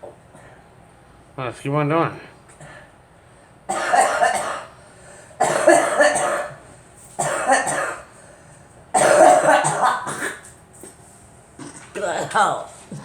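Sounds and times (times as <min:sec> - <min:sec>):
girl coughing: 0:03.7 - 0:04.8, 0:05.4 - 0:06.6, 0:07.2 - 0:08.1, 0:08.9 - 0:10.5.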